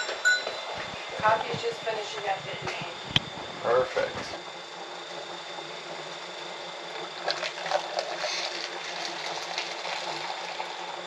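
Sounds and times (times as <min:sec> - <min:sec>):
hot coffee pouring and splashing: 0:04.7 - 0:11.0.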